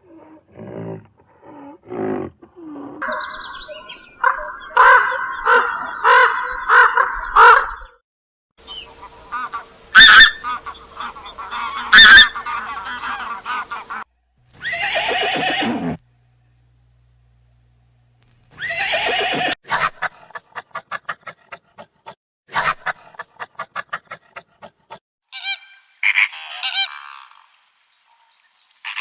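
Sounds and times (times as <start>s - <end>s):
geese honking: 8.6s - 14.0s
horse whinnying: 14.6s - 16.0s, 18.6s - 19.6s.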